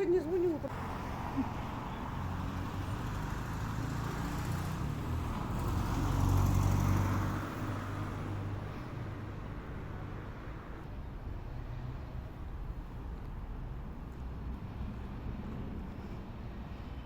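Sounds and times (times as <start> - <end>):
vehicle passing: 0.0 - 9.3
road traffic rumble: 0.0 - 17.0.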